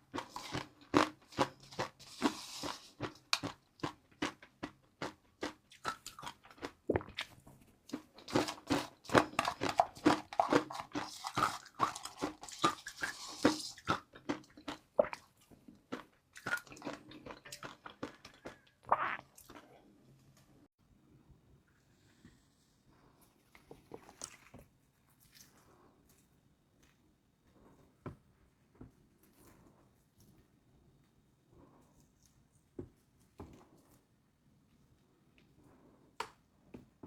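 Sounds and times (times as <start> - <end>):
person chewing crunchy noodles: 0.0 - 19.9.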